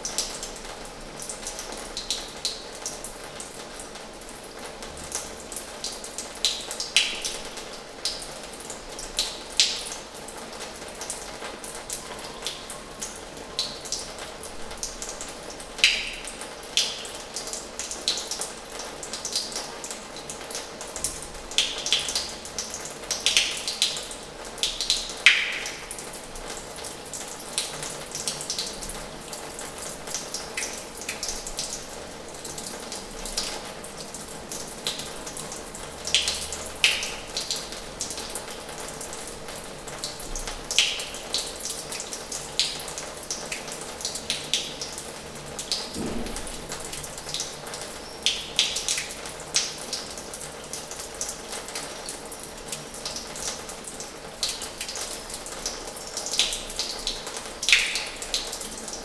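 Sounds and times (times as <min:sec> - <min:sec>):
water drips: 0:00.0 - 0:59.0
tap water splashing into basin: 0:24.7 - 0:26.1, 0:45.7 - 0:49.8.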